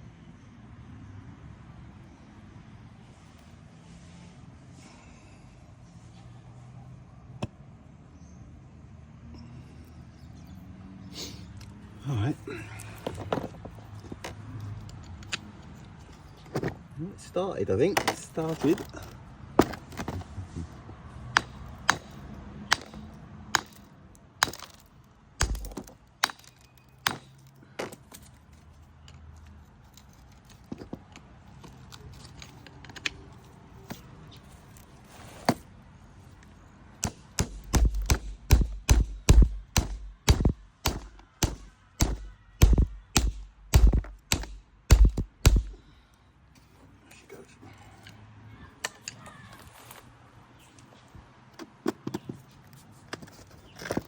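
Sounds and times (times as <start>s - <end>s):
rock being struck: 25.4s - 26.5s, 37.0s - 45.8s.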